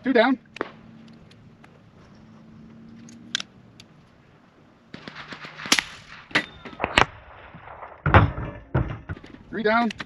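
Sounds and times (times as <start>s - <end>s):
sharp cracks and knocks: 0.5s - 1.8s, 4.9s - 10.0s.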